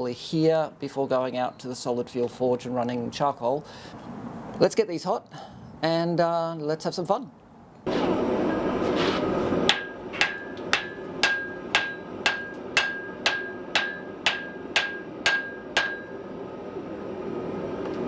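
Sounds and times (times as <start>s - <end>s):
gas forge burner roar: 7.9s - 18.0s
hammer blows on steel anvil: 9.6s - 16.3s.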